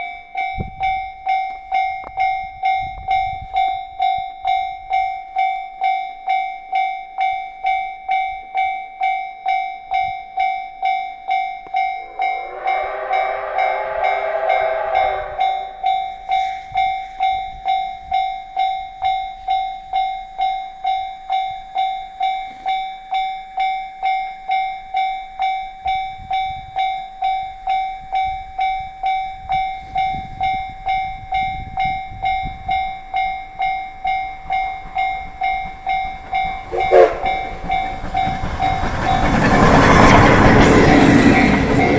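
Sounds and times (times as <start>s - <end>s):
steam locomotive whistle: 11.8s - 16.7s, 36.6s - 38.0s
train rumble: 11.8s - 16.8s, 34.4s - 41.9s.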